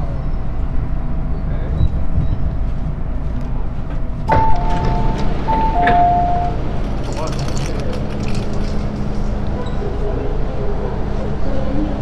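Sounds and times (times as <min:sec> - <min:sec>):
train rumbling inside car: 0:00.0 - 0:12.0
electronic two-note chime: 0:04.3 - 0:06.6.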